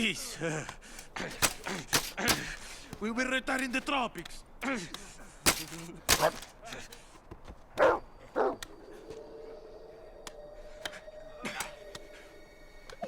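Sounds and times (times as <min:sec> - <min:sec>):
dog barking: 0:06.1 - 0:06.4, 0:07.8 - 0:08.6
faint steady held tone: 0:07.8 - 0:13.0.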